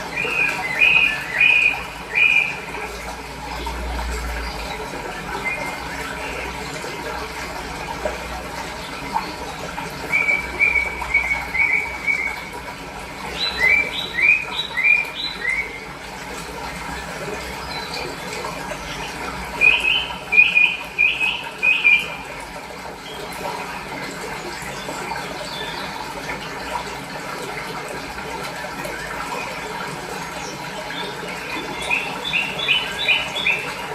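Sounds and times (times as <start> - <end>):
running water: 0.0 - 33.9
bird chirping: 0.1 - 2.7, 10.1 - 12.5, 13.3 - 15.8, 18.9 - 22.2, 30.9 - 33.8.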